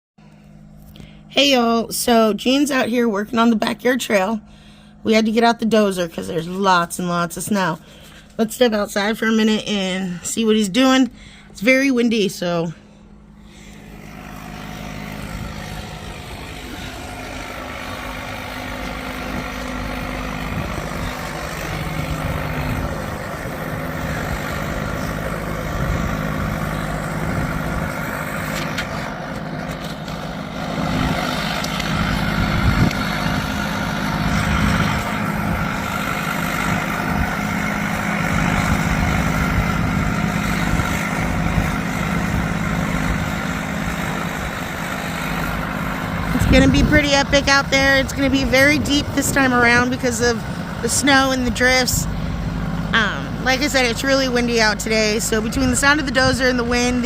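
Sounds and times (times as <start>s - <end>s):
bulldozer diesel engine running: 0.2s - 57.0s
wind buffeting microphone: 14.2s - 29.0s, 30.8s - 52.8s.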